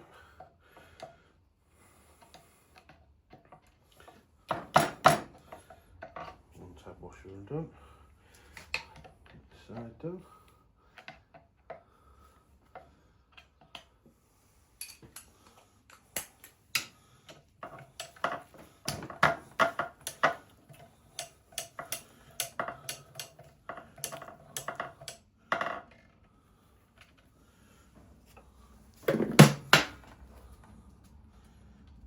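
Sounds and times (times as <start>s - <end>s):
metal tools clicking on nuts: 16.0s - 25.8s.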